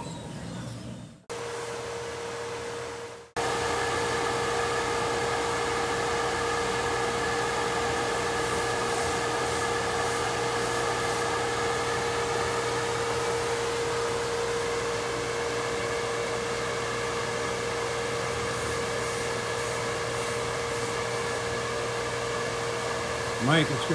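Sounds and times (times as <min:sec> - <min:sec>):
machine humming: 0:22.0 - 0:23.9.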